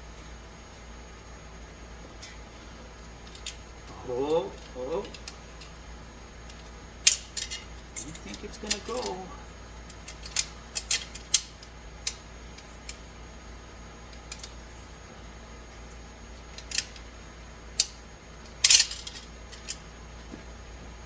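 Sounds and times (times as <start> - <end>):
metal parts clicking and clinking: 3.2 - 5.8, 6.4 - 9.3, 9.9 - 13.0, 14.1 - 14.6, 16.5 - 17.1, 17.8 - 19.8.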